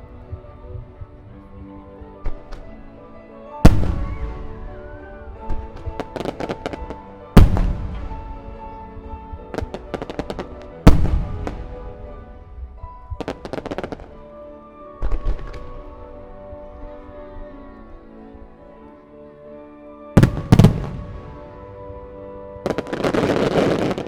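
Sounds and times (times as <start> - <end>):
music with held notes: 0.0 - 24.0
crackling fireworks pops: 2.2 - 2.8, 3.7 - 8.8, 9.6 - 14.2, 22.7 - 24.0
fireworks booming: 3.6 - 4.9, 5.5 - 8.8, 9.6 - 14.1, 20.2 - 21.7.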